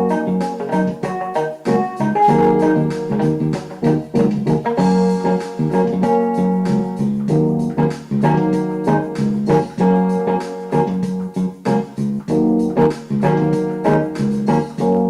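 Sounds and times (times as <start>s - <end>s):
keyboard chords: 0.0s - 15.0s.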